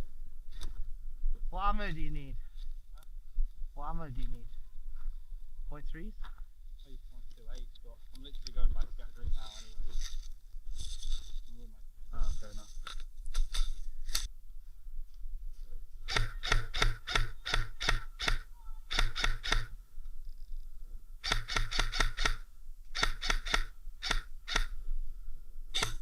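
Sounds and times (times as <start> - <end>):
airsoft guns firing: 16.1 - 19.7, 21.2 - 22.4.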